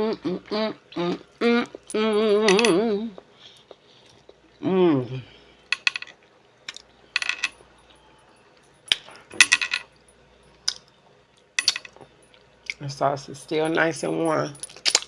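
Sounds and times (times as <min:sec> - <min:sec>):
person humming: 0:00.0 - 0:03.2, 0:04.6 - 0:05.4.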